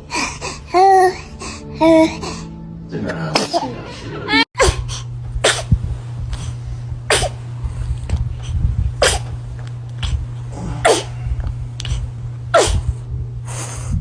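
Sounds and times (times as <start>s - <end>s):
baby sneezing: 7.1s - 7.4s, 10.8s - 11.1s, 12.6s - 12.8s.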